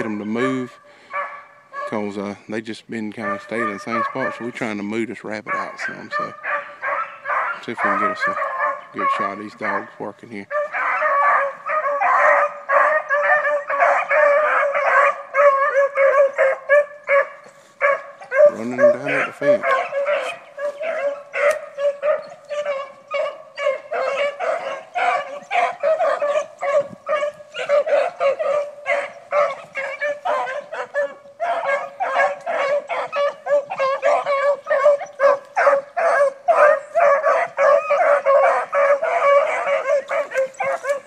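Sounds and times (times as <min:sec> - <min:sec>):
beagles baying: 0:00.0 - 0:02.4, 0:03.0 - 0:41.0.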